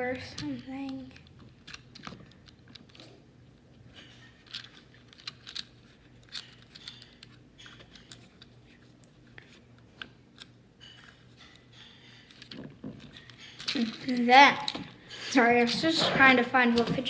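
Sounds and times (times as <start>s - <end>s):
finger scraping plastic toy: 10.9s - 17.0s.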